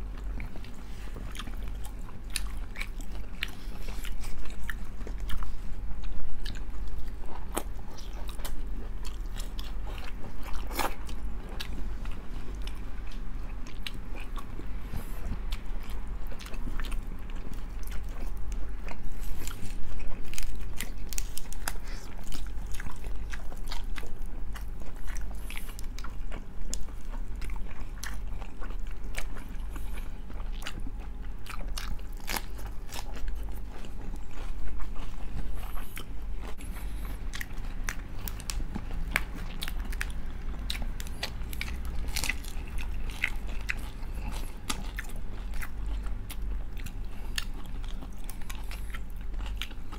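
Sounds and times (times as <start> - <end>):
chewing and biting food: 0.0 - 49.9
steady low hum: 0.0 - 49.9.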